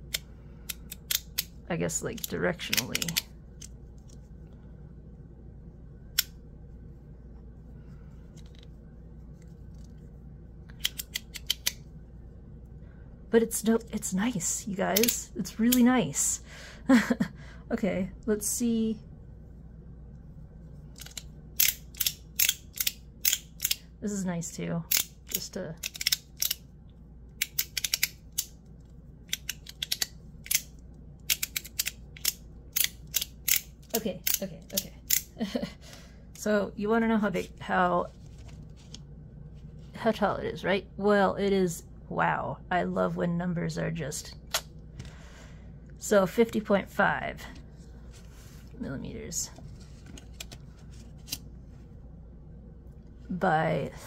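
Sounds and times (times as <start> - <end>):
low steady hum: 0.0 - 54.0
metal fidget slider clicking: 10.7 - 11.8, 21.0 - 23.8, 24.9 - 26.6, 27.4 - 28.6, 29.3 - 35.3.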